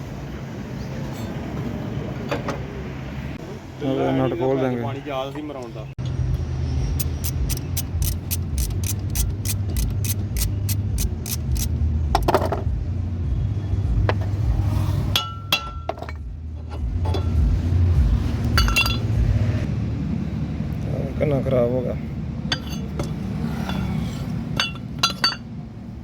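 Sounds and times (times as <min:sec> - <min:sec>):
ratchet wrench clicking: 0:06.9 - 0:11.8
metallic clinks of tools: 0:24.6 - 0:25.5.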